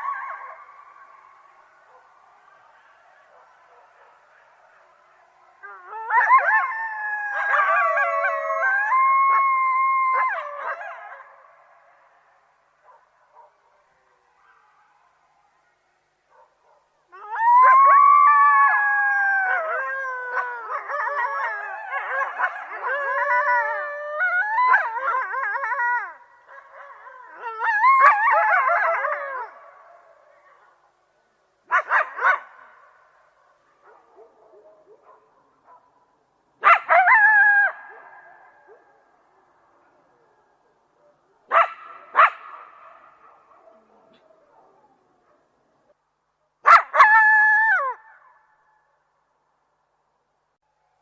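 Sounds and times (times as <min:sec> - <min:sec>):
coyotes howling: 0:00.0 - 0:11.6, 0:17.1 - 0:30.6.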